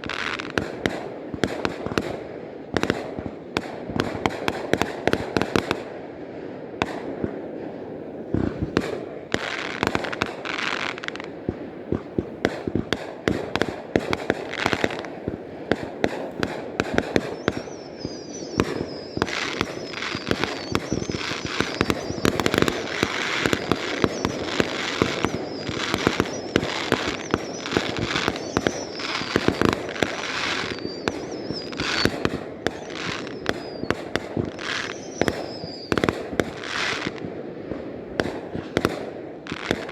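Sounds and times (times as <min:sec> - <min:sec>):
fireworks bangs and crackling: 0:00.0 - 0:39.9
high wavering whistle: 0:17.2 - 0:36.1.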